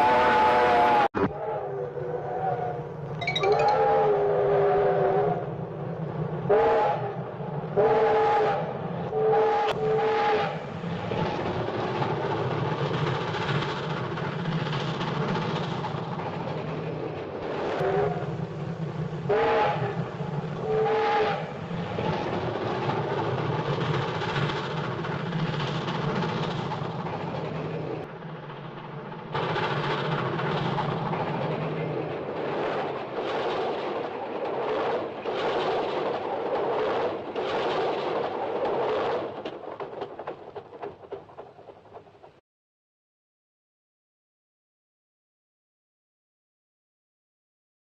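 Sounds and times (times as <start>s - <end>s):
steam train whistle toots: 0.0s - 1.7s, 6.5s - 7.1s, 7.8s - 10.6s, 19.3s - 19.9s, 20.6s - 21.5s
train running noise: 0.0s - 42.4s.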